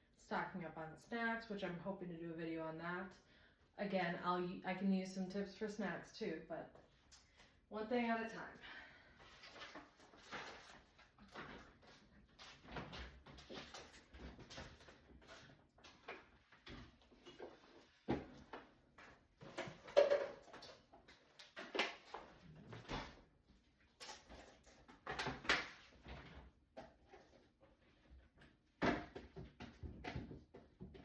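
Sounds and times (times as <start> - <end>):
containers knocking and clattering: 19.5 - 20.9.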